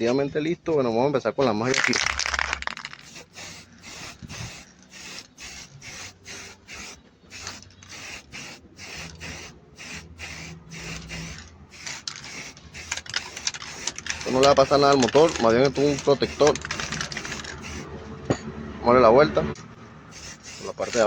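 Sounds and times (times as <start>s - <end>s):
brush rubbing on motor: 2.8s - 18.0s, 20.2s - 21.0s.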